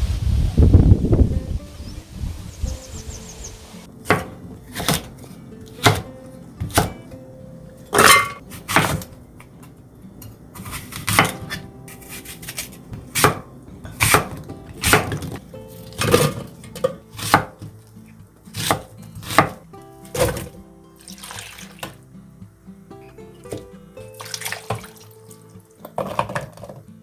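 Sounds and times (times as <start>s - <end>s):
faint background music: 1.0s - 27.0s
knife chopping on cutting board: 4.0s - 7.0s, 8.5s - 9.1s, 10.6s - 15.4s, 16.0s - 17.7s, 18.5s - 19.6s.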